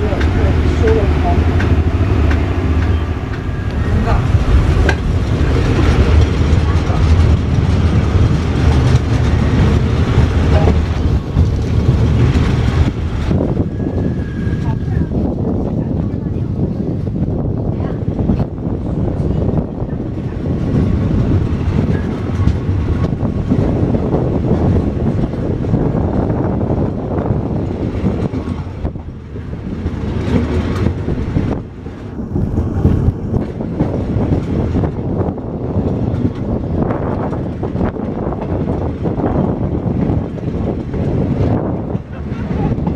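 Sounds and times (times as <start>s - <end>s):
wheels clattering over rail joints: 0.0s - 15.0s
train rumbling past: 0.0s - 42.9s.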